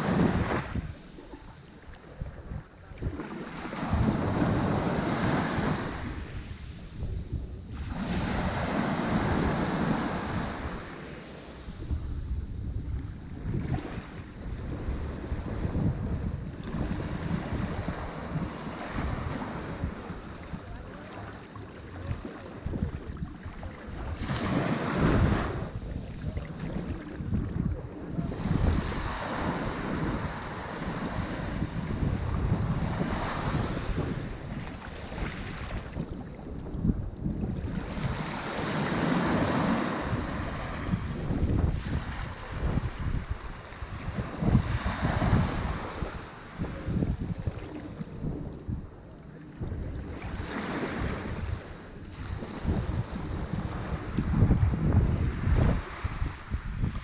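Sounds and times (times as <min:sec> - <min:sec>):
ocean surf breaking: 0:00.0 - 0:01.9, 0:03.1 - 0:15.5, 0:23.6 - 0:36.0, 0:37.6 - 0:48.5
wind buffeting microphone: 0:00.0 - 0:57.0.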